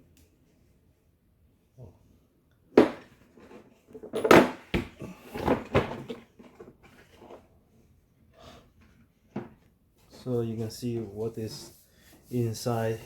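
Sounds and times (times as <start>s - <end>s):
case and tools clattering: 2.8s - 7.4s.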